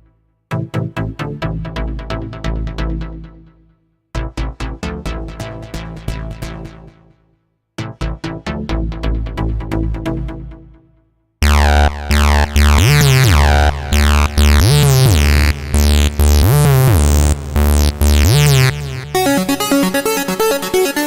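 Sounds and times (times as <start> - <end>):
sustained synth notes sliding: 11.4 - 21.0
synth arpeggio of plucked notes: 11.4 - 21.0.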